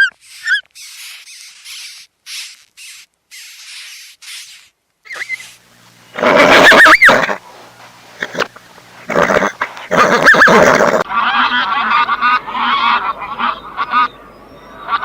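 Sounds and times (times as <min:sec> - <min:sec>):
harsh squealing animal call: 0:00.0 - 0:04.4, 0:05.1 - 0:07.4, 0:09.1 - 0:14.1
animal hissing bursts: 0:00.0 - 0:11.0.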